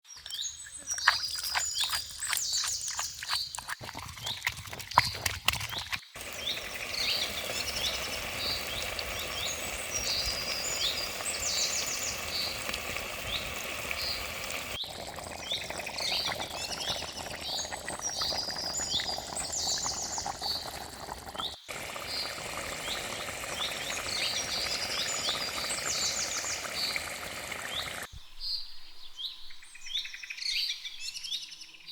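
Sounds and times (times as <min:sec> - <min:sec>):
birds chirping and trilling: 0:06.0 - 0:14.6, 0:21.4 - 0:31.9.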